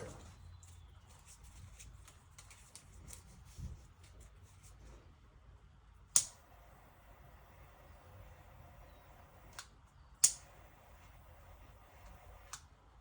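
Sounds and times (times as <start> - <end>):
sharp click: 6.2 - 6.4, 9.5 - 10.5.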